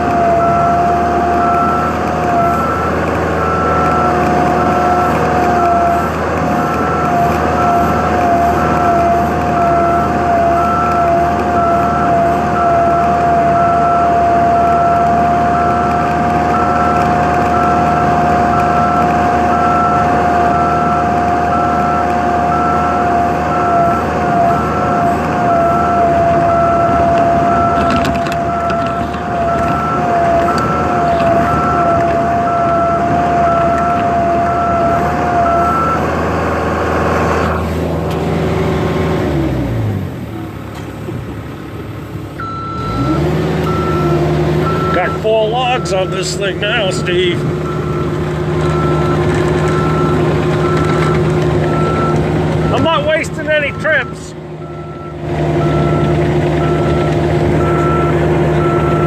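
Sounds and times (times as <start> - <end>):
heavy machine engine running: 0.0 - 59.0
repeating beep: 42.4 - 59.0.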